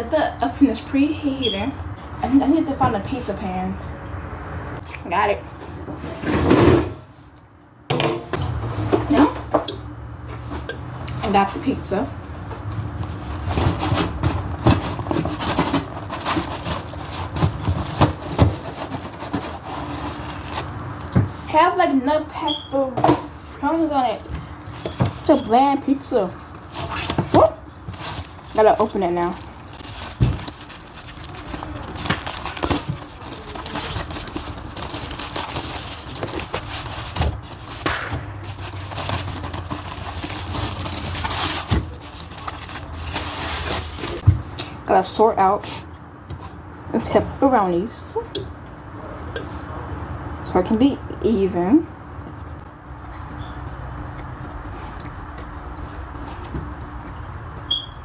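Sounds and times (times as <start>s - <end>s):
packaging clicks and scrapes: 13.0s - 20.8s, 26.4s - 44.3s
plastic wrapper crinkling: 14.4s - 20.8s, 27.8s - 44.2s.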